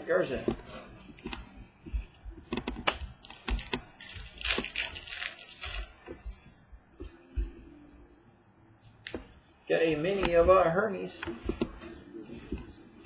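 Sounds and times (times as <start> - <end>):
cards rustling: 0.4 - 7.2.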